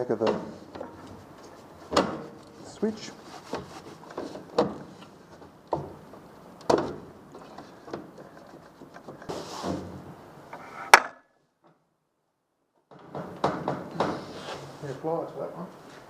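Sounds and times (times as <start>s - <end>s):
scrape: 2.6s - 4.4s, 9.3s - 10.0s, 14.1s - 15.0s.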